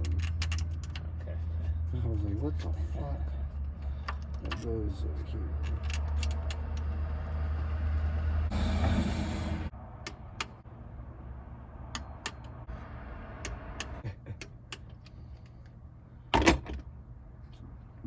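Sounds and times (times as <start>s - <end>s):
metallic tool clicks and taps: 11.9s - 12.6s, 13.4s - 15.2s.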